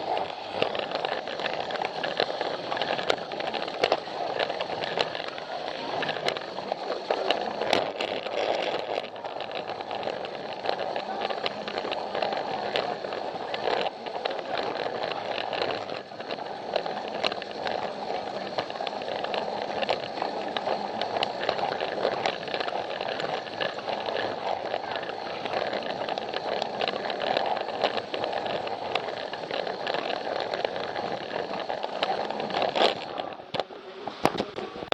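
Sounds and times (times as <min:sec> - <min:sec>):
toy train motor whirring: 0:00.0 - 0:34.9
wheels clattering over track joints: 0:00.0 - 0:34.9.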